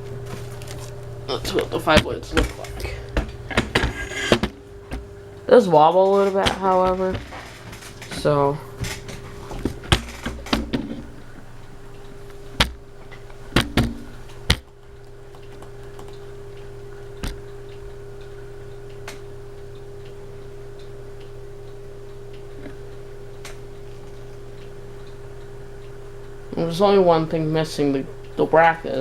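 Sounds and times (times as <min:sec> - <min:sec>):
ceiling fan motor hum: 0:00.0 - 0:29.0
sharp clicks: 0:11.9 - 0:16.3.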